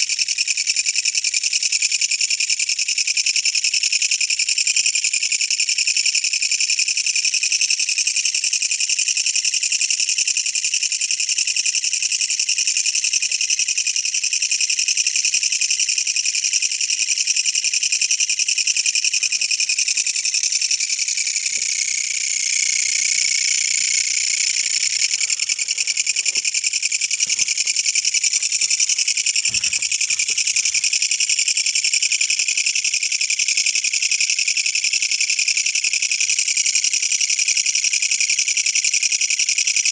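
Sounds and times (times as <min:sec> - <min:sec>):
katydid high-pitched buzz: 0:18.6 - 0:32.2.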